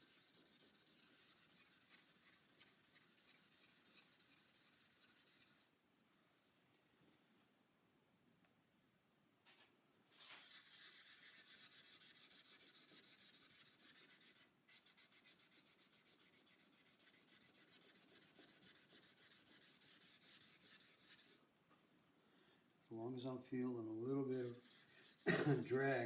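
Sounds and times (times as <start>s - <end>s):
sandpaper rubbing back and forth: 0.0s - 5.7s, 10.1s - 21.4s, 24.3s - 26.0s.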